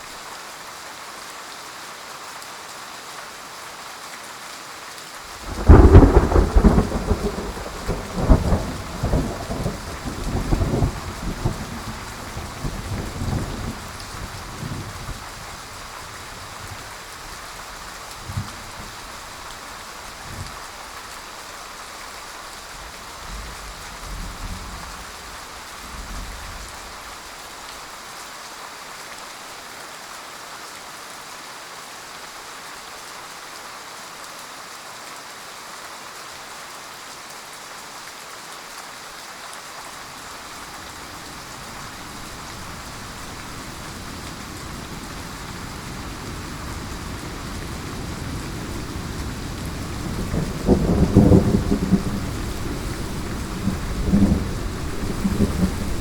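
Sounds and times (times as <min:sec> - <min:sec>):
heavy rain falling: 0:00.0 - 0:56.0
low thunder rumbles: 0:05.4 - 0:15.5, 0:40.5 - 0:56.0.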